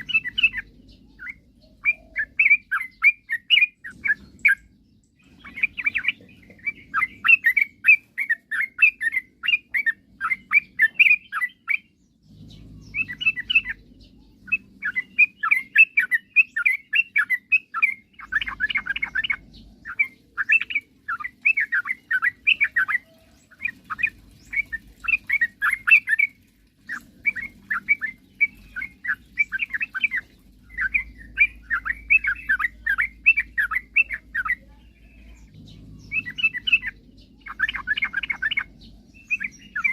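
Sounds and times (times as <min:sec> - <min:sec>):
low rumble: 0:35.0 - 0:37.9.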